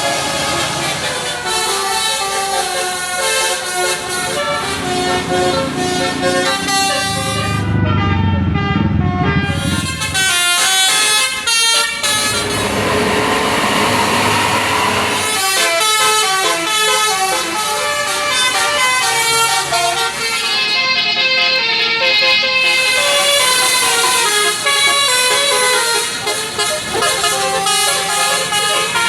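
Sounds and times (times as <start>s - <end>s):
musical bus air horn: 0.0s - 29.0s
low engine rumble: 2.4s - 15.8s
rushing noise: 4.0s - 16.3s.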